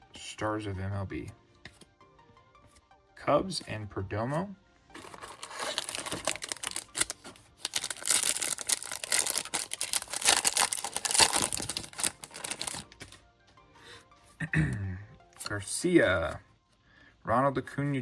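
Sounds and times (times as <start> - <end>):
plastic wrapper crinkling and tearing: 5.0 - 13.2.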